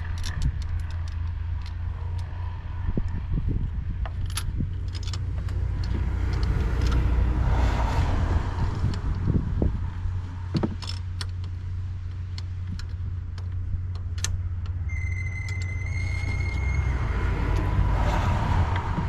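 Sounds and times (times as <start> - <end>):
vehicle engine rumble: 0.0 - 19.0
thin steady high tone: 14.9 - 17.1.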